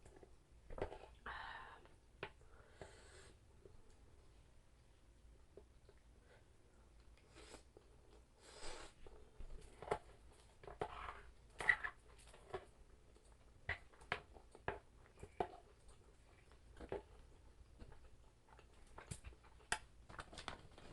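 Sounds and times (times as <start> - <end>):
sharp clicks and crunches: 17.8 - 20.9.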